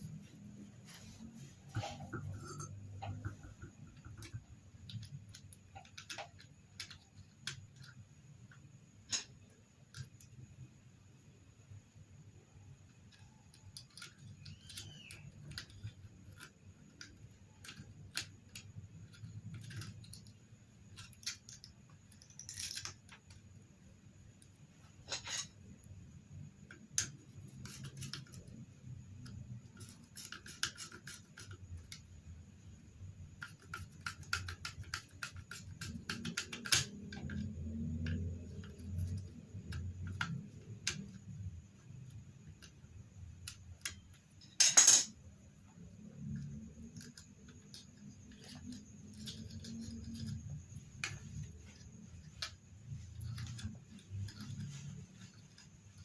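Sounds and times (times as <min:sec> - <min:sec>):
faint low hum: 0:00.0 - 0:56.0
small hard objects clicking: 0:13.0 - 0:23.5, 0:33.4 - 0:45.1.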